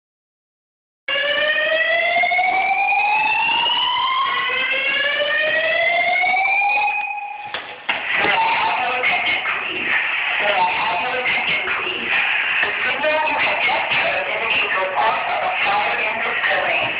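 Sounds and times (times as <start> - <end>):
fire alarm rising whoop: 1.1 - 7.5.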